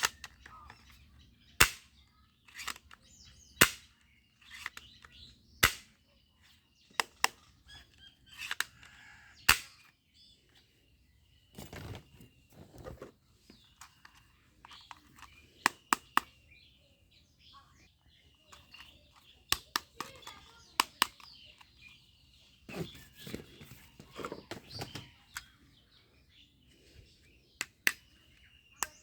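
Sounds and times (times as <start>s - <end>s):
toy guns snapping and clicking: 0.0s - 1.0s, 1.6s - 6.0s, 6.9s - 10.0s, 13.8s - 16.4s, 18.5s - 21.8s, 28.8s - 29.0s
faint bird chirps: 0.0s - 29.0s
handling rustle: 11.5s - 15.7s, 19.9s - 25.6s.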